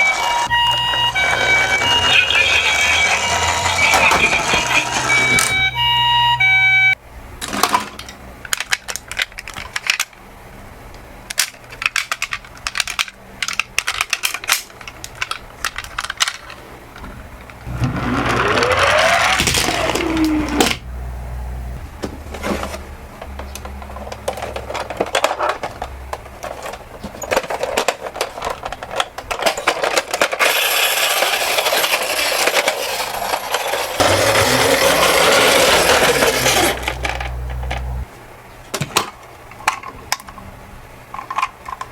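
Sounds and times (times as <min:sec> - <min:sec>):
toy cars rattling: 0:00.0 - 0:05.7, 0:07.4 - 0:10.2, 0:11.2 - 0:20.8, 0:22.5 - 0:38.0, 0:41.1 - 0:41.9
toy cars rolling down slope: 0:00.0 - 0:06.0, 0:17.6 - 0:20.8, 0:23.9 - 0:37.9
toy cars clacking: 0:00.0 - 0:06.1, 0:06.8 - 0:10.2, 0:11.2 - 0:20.8, 0:22.6 - 0:38.0, 0:41.1 - 0:41.9.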